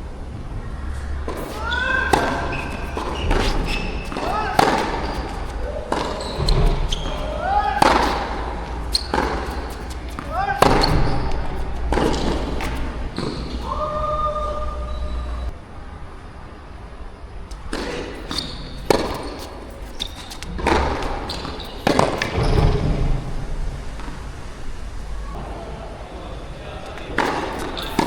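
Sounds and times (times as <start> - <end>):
shoe squeak or brief call: 1.0 - 8.2, 8.8 - 11.4, 13.2 - 15.5, 18.2 - 20.4, 21.2 - 22.8
tennis ball struck by rackets: 1.2 - 14.0, 17.7 - 19.5, 20.2 - 23.2
tennis ball bouncing on court: 1.2 - 14.1, 17.5 - 23.2, 27.2 - 28.0.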